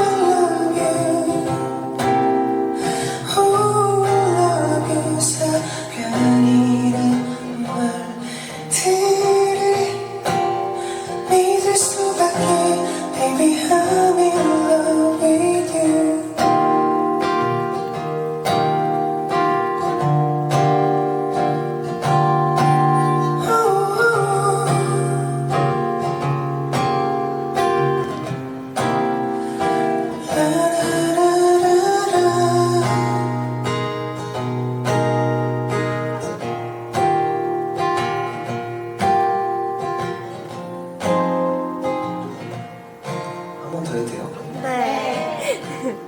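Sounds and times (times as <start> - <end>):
person singing: 0.0 - 2.1, 2.7 - 16.8, 22.8 - 25.7, 29.7 - 33.5, 44.5 - 46.0
acoustic guitar strumming chords: 0.0 - 46.0.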